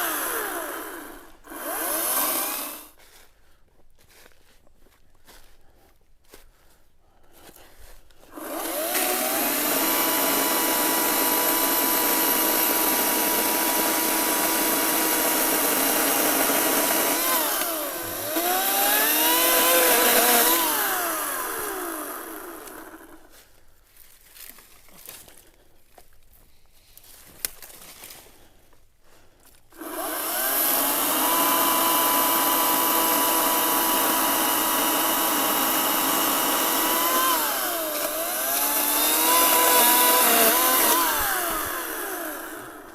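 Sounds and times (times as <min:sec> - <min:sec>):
chainsaw cutting wood: 0:00.0 - 0:03.0, 0:08.2 - 0:23.4, 0:29.7 - 0:42.9.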